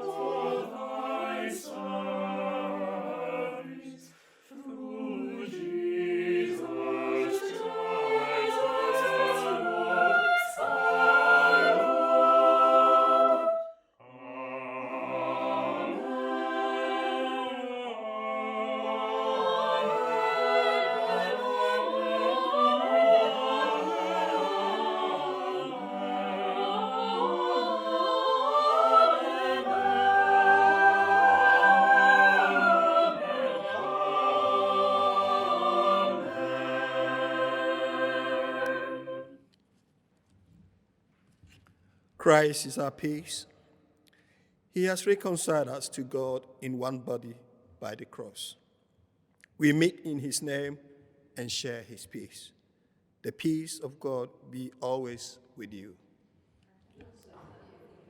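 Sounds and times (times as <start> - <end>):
choir singing held notes: 0.0 - 39.4.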